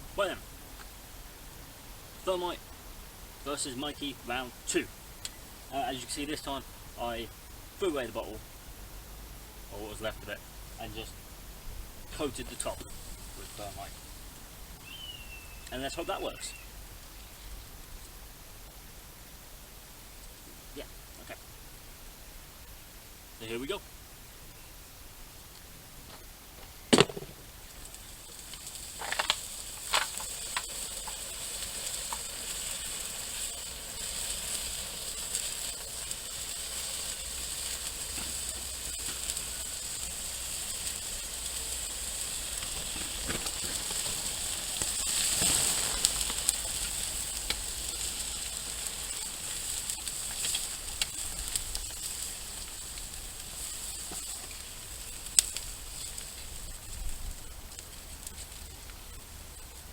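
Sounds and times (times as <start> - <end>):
thermite sizzling hiss: 0.0 - 59.9
small snaps: 5.2 - 5.4, 27.7 - 34.7, 35.3 - 57.0
sharp crack: 26.9 - 59.0.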